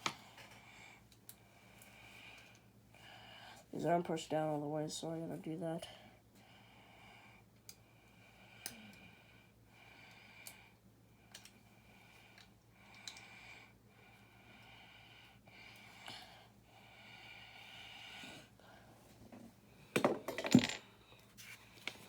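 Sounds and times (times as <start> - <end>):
soft slow breathing: 0.2 - 3.7, 5.8 - 19.9.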